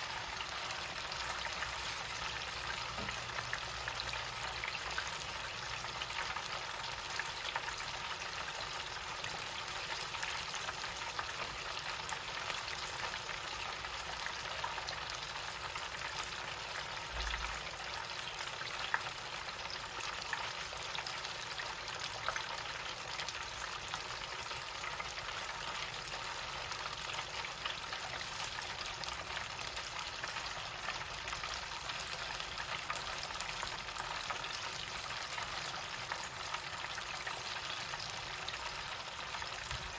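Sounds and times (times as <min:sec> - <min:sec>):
chicken deep-frying in oil: 0:00.0 - 0:39.9.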